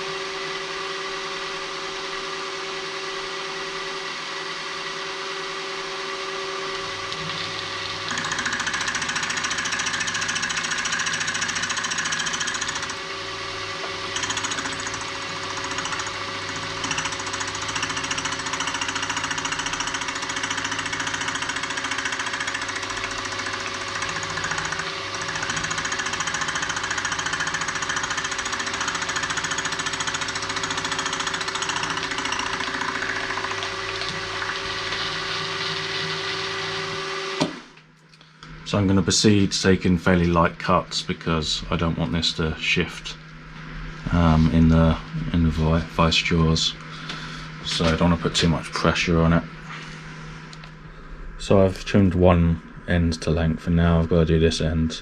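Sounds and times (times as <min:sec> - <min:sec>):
milling machine motor hum: 0:00.0 - 0:37.8
cutter cutting metal: 0:13.8 - 0:33.4.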